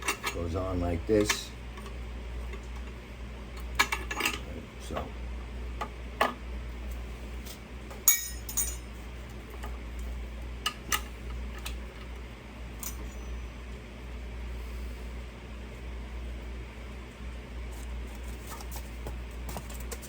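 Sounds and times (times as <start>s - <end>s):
steady low hum: 0.0s - 20.0s
metal hardware clinking: 8.0s - 8.8s.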